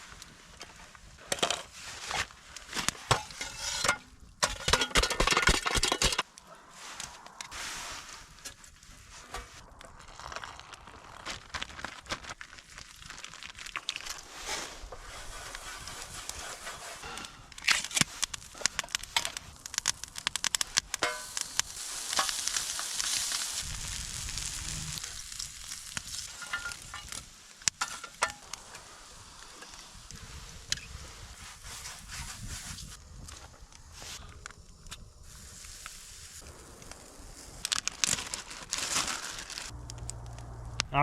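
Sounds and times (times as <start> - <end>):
campfire crackling: 0.0 - 41.0
food sizzling in a pan: 19.6 - 30.0.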